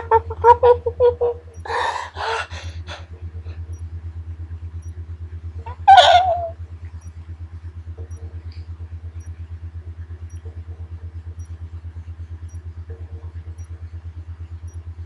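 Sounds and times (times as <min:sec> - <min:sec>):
low pulsing hum: 0:00.0 - 0:15.0
faint high ticks: 0:06.9 - 0:07.2, 0:11.4 - 0:11.6.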